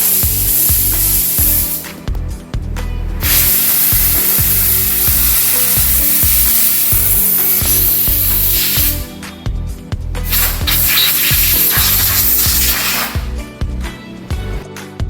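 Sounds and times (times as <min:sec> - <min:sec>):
spray hissing: 0:00.0 - 0:02.0, 0:03.2 - 0:09.2, 0:10.2 - 0:13.4
background music: 0:00.0 - 0:15.0.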